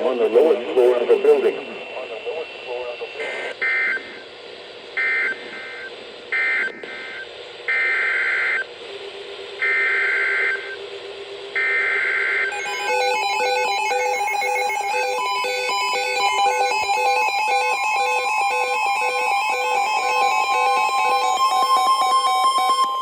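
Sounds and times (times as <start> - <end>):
harsh two-pitch data tone bursts: 11.6 - 23.0.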